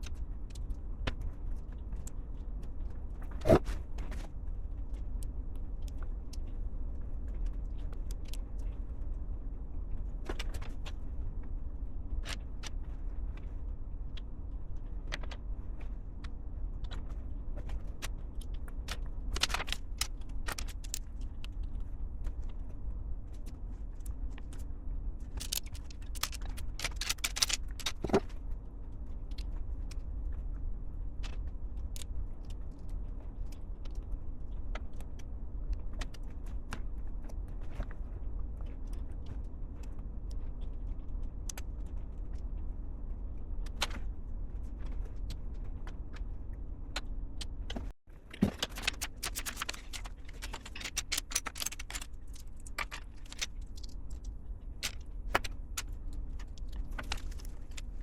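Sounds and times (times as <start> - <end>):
steady low hum: 0.0 - 58.0
plastic toy bricks clicking: 25.4 - 28.2, 48.4 - 54.2.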